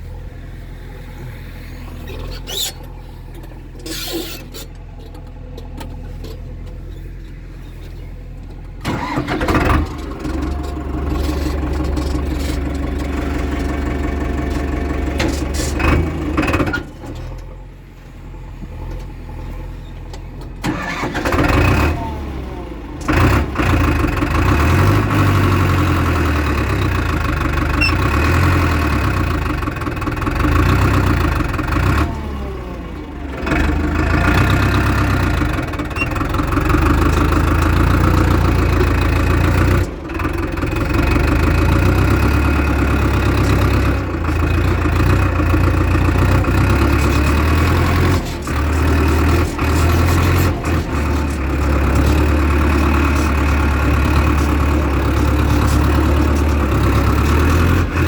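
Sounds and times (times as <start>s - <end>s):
diesel engine running: 0.0s - 58.0s.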